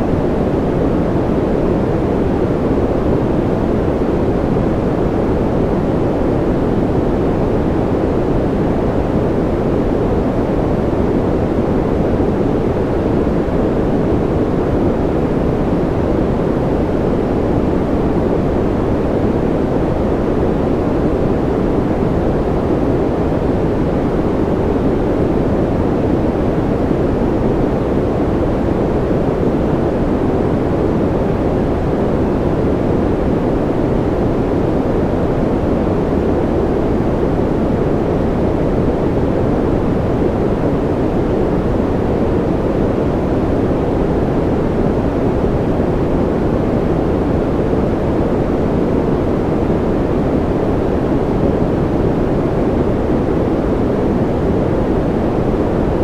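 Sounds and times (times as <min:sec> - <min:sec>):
deep white noise rushing: 0:00.0 - 0:56.0.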